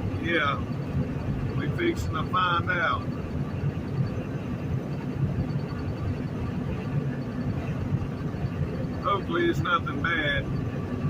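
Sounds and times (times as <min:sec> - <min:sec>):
truck engine and road noise: 0:00.0 - 0:11.0.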